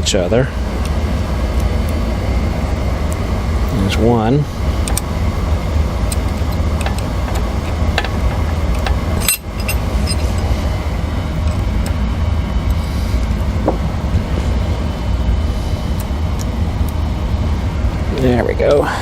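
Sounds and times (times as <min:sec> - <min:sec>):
low background rumble: 0:00.0 - 0:19.0
metal washers and screws clinking: 0:06.1 - 0:10.5.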